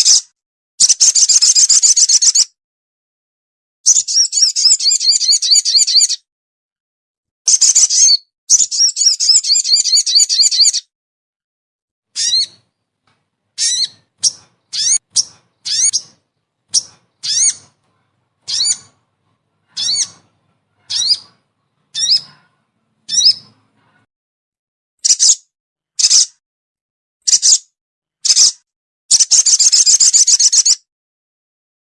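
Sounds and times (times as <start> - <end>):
harsh bird calls: 12.1 - 24.1.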